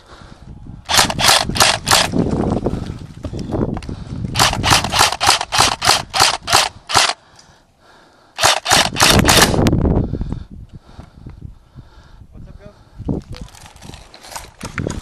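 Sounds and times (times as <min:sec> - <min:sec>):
airsoft rifle shots: 0:00.9 - 0:02.1, 0:04.4 - 0:07.2, 0:08.4 - 0:09.6.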